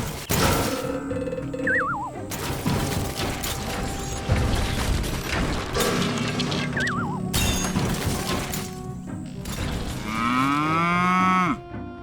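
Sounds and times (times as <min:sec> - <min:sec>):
cow moo: 0:09.8 - 0:11.6.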